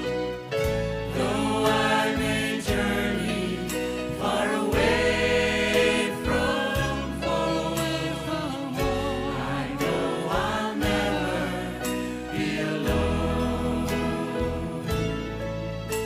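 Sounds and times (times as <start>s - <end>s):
instrumental accompaniment with beat: 0.0s - 8.1s
choir singing in harmony: 0.6s - 16.0s.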